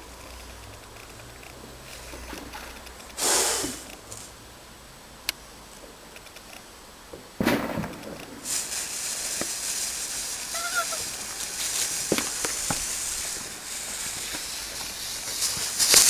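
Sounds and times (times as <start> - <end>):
firework crackles: 1.9 - 4.4, 6.2 - 16.0
firework hissing: 3.1 - 4.4, 7.4 - 16.0.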